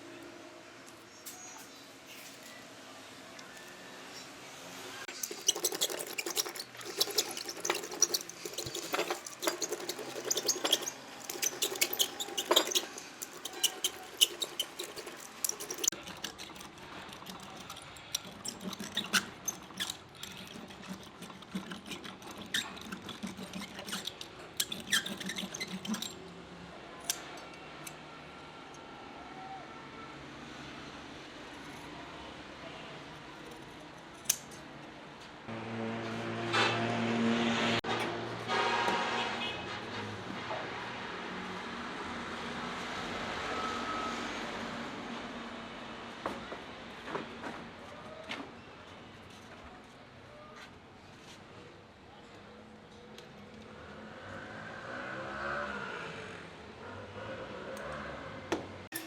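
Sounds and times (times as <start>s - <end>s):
hand tools clicking and scraping: 5.1s - 26.4s, 27.0s - 28.0s.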